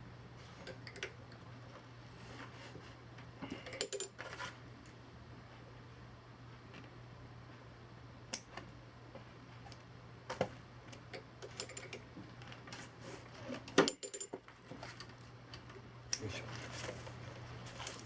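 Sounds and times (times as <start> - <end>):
hand tools clicking and tapping: 3.7 - 4.1.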